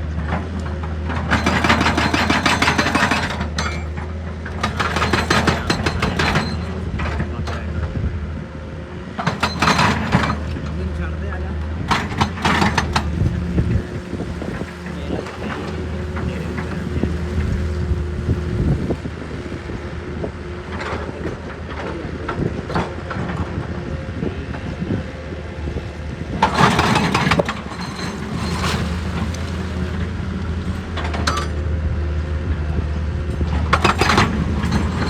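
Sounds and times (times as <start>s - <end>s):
excavator diesel engine running: 0.0s - 35.0s
clattering and scraping: 1.1s - 7.7s, 9.2s - 19.0s, 25.6s - 30.0s, 33.6s - 35.0s.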